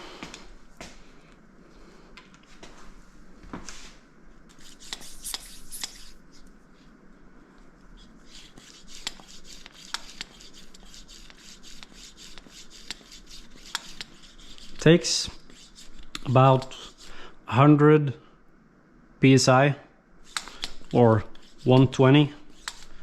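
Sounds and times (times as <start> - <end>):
hand pump strokes: 4.5 - 6.1, 8.2 - 17.1, 20.3 - 23.0.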